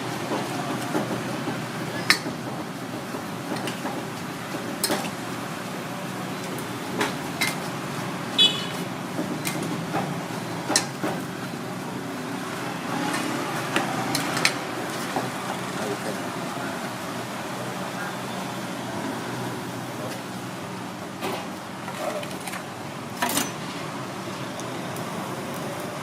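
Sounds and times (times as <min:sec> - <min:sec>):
street traffic noise: 0:00.0 - 0:26.0.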